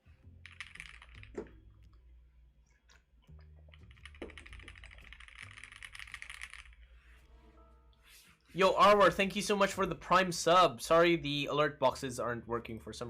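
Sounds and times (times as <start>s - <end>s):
mechanical keyboard typing: 3.8s - 6.8s.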